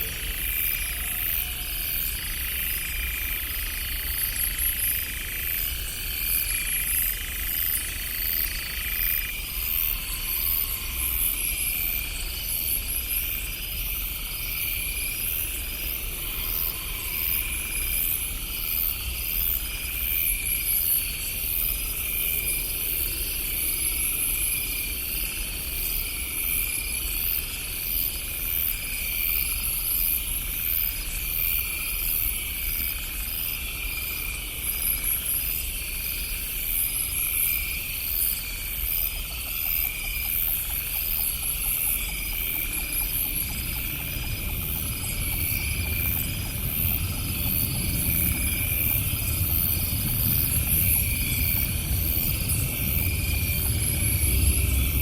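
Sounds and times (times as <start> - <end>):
crickets chirping: 0.0 - 55.0
low rumble: 43.2 - 55.0.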